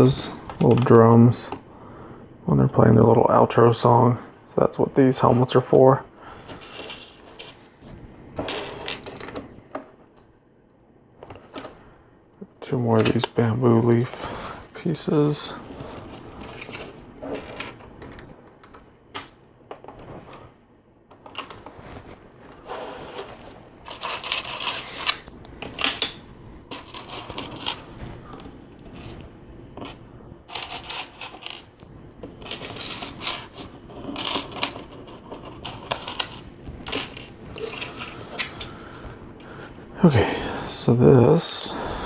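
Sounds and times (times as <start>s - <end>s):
plastic pieces clicking and clattering: 23.8s - 27.8s, 29.8s - 38.7s.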